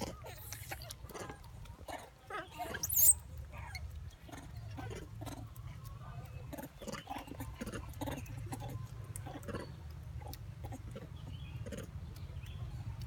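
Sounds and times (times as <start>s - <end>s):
monkey squeaking: 2.5s - 4.5s.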